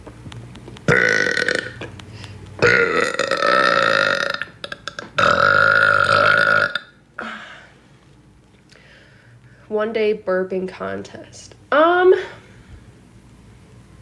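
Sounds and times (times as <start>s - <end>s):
woman burping: 0.9s - 1.8s, 2.6s - 7.6s.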